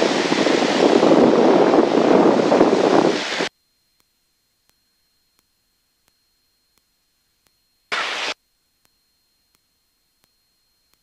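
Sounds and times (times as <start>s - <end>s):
faint regular ticks: 3.8s - 7.9s, 8.7s - 11.0s
radio static burst: 7.9s - 8.4s.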